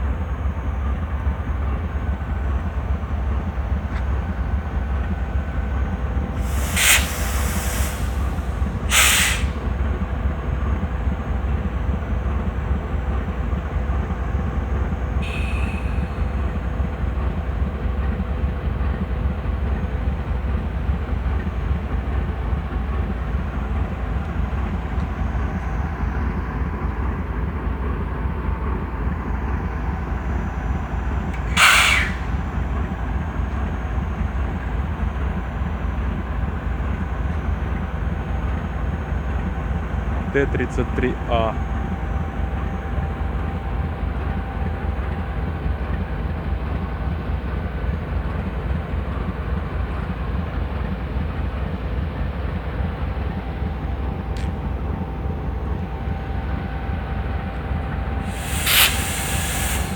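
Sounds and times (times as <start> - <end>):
diesel locomotive engine idling: 0.0 - 59.9
sharp air hiss blasts: 6.4 - 9.7, 15.2 - 16.2, 31.4 - 32.4, 58.2 - 59.9.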